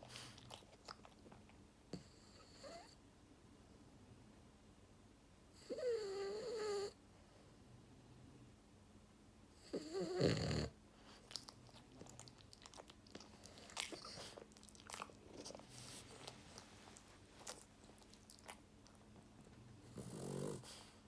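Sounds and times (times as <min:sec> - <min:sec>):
dog snoring: 0:01.9 - 0:03.0, 0:05.6 - 0:07.0, 0:09.6 - 0:10.8, 0:19.8 - 0:21.0.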